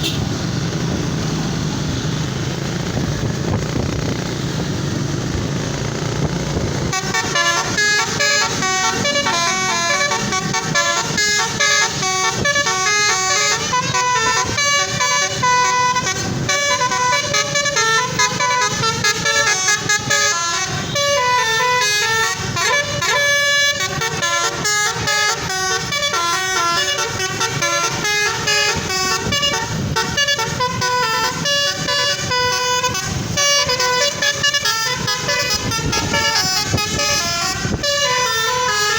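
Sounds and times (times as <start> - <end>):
bus musical horn melody: 0.0 - 0.4, 6.8 - 38.9
wind-like noise: 34.1 - 38.1.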